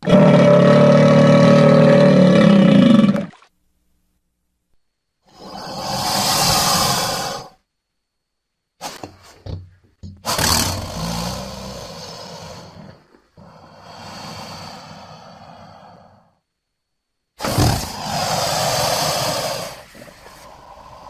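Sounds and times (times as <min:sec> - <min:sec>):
crocodilian growls: 0:00.0 - 0:03.4, 0:10.2 - 0:16.4, 0:17.4 - 0:21.0.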